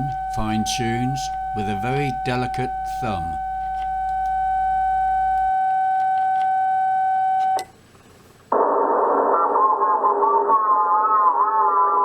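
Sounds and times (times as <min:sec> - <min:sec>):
radio band hiss: 0:00.0 - 0:03.9
steady radio sidetone: 0:00.0 - 0:07.6.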